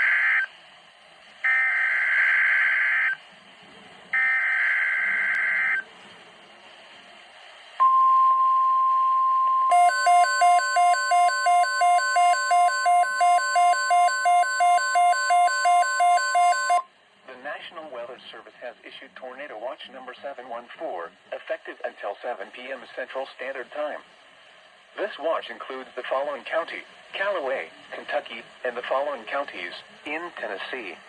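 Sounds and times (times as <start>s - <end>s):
pulsing beeps: 7.8s - 16.8s
steady alert tone: 7.8s - 16.8s.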